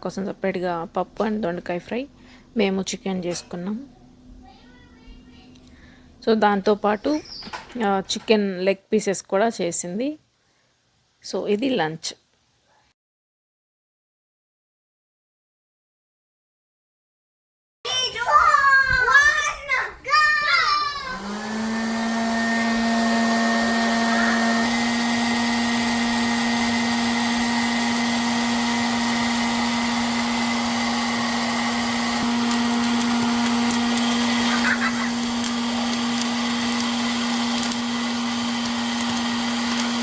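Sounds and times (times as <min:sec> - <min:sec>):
appliance motor humming: 0:20.7 - 0:40.0.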